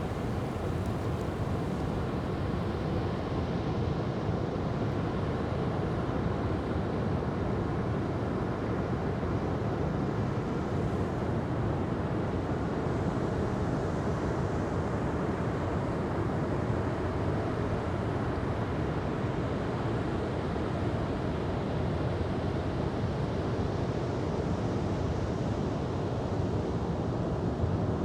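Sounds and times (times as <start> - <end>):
ocean surf rushing: 0.0 - 3.1.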